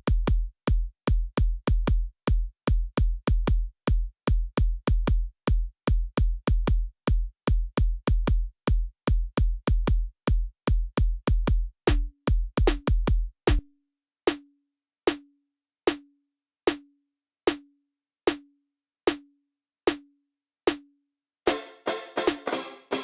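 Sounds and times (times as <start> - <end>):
electronic kick drum hits: 10.7 - 13.6
short pitched percussive hit: 21.5 - 23.0.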